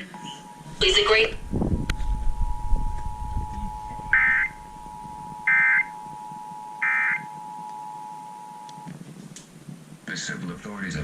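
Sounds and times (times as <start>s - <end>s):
two-tone alert signal: 0.8s - 8.9s
digital data warble bursts: 3.5s - 6.0s.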